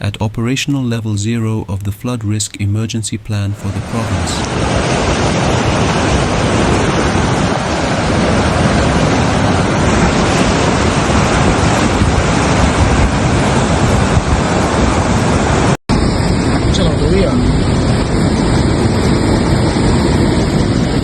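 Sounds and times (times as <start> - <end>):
rushing floodwater: 3.5 - 15.8.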